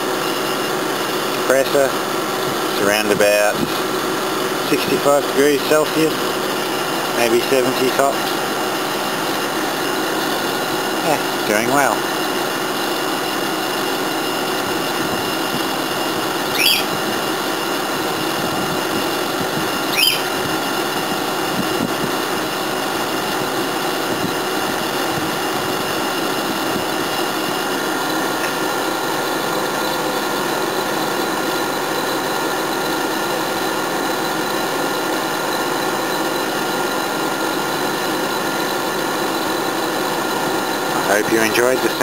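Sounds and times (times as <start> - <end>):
brief high chirp: 16.6 - 16.9, 19.9 - 20.3.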